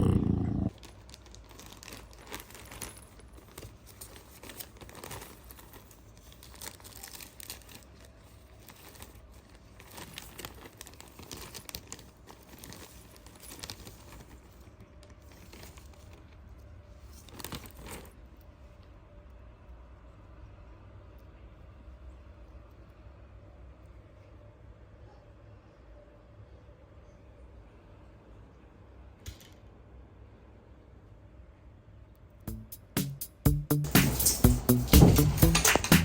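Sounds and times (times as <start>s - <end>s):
faint crinkling and rustling: 0.7s - 19.0s.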